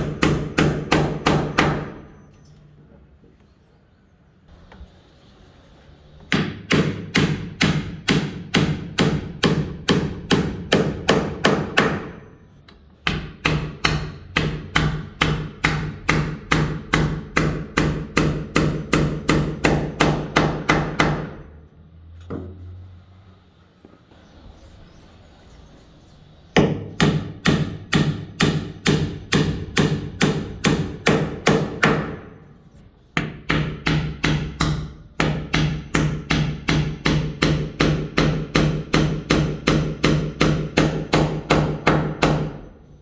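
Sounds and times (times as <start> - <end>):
hammer striking nail into wood: 0.0 - 2.1, 6.3 - 12.3, 13.0 - 21.4, 26.6 - 32.4, 33.2 - 42.7.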